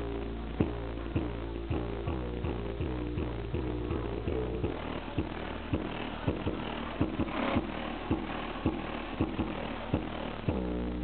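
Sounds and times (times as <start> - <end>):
heavy bass beat thumping: 0.0 - 11.0
hip-hop song on car stereo: 0.0 - 11.0.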